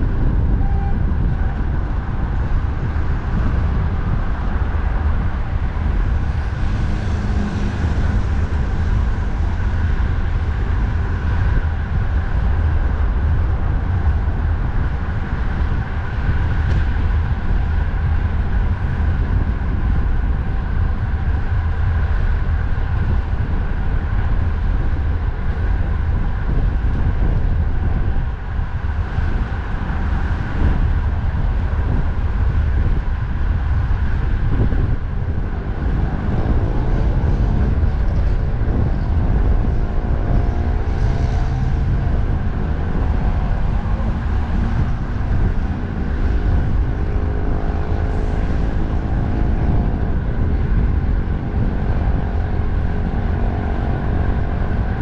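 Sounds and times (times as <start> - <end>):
highway traffic noise: 0.0 - 55.0
wind on microphone: 0.0 - 55.0.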